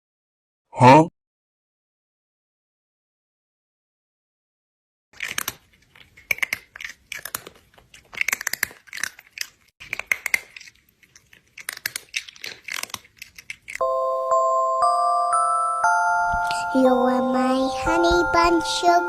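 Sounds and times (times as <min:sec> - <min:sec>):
crunchy chewing: 0:05.2 - 0:13.8.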